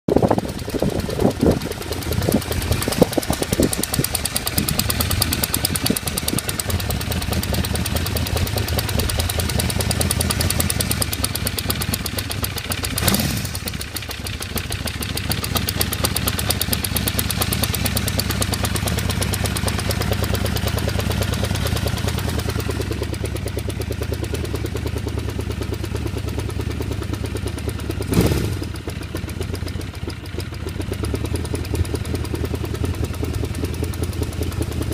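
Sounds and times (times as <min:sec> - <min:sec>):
motorcycle engine idling with ticking: 0:00.1 - 0:34.9.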